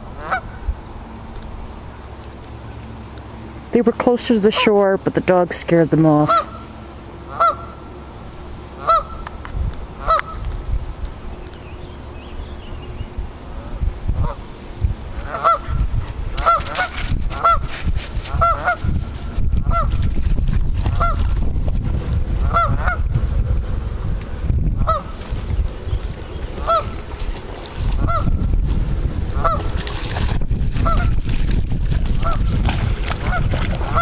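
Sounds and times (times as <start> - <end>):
steady low rumble: 0.0 - 34.0
geese honking: 0.2 - 0.6, 6.1 - 8.0, 8.7 - 9.3, 10.0 - 10.5, 15.2 - 15.8, 16.4 - 19.0, 19.6 - 19.9, 22.4 - 23.0, 24.8 - 25.2, 26.5 - 27.1, 28.0 - 28.3, 29.4 - 29.7, 33.2 - 34.0.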